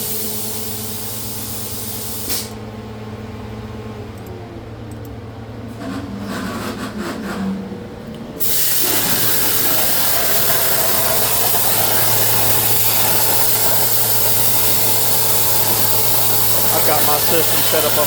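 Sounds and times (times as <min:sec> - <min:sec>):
plasma cutter hissing: 0:00.0 - 0:02.5, 0:08.4 - 0:18.0
plasma torch arc striking: 0:00.0 - 0:02.6, 0:08.4 - 0:18.0
steady low hum: 0:00.0 - 0:18.0.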